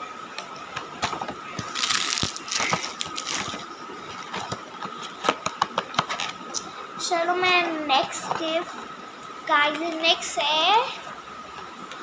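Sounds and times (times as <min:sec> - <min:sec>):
crinkly packaging crumpled: 0:01.6 - 0:04.4.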